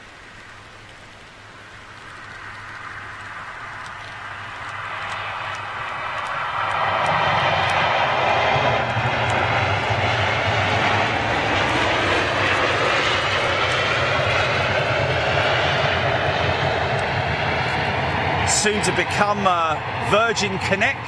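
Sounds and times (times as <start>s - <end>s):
turboprop airliner passing close: 1.9s - 21.0s.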